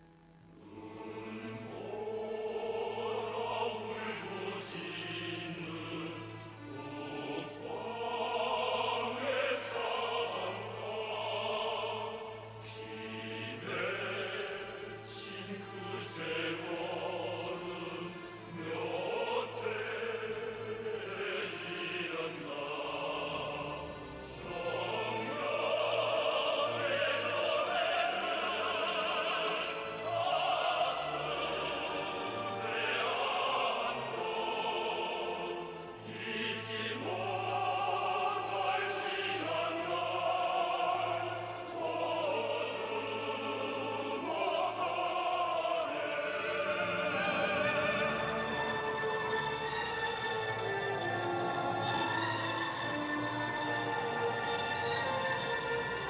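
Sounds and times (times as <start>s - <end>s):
choir voices: 0.0s - 56.0s
operatic singing with vibrato: 0.1s - 56.0s
orchestral accompaniment: 0.8s - 56.0s.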